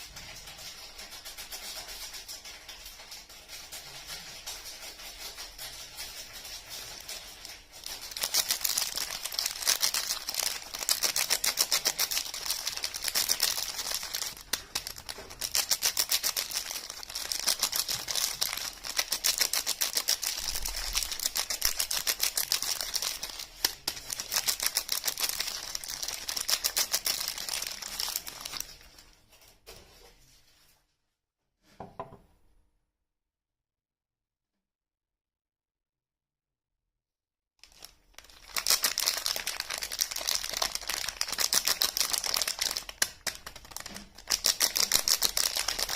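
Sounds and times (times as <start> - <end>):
wrapper crinkling and tearing: 4.8 - 29.2, 37.6 - 45.9.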